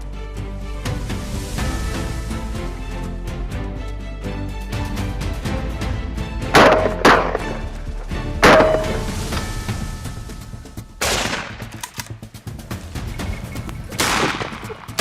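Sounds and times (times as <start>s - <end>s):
background music: 0.0s - 15.0s
rifle shots with echo: 11.0s - 12.2s, 14.0s - 15.0s.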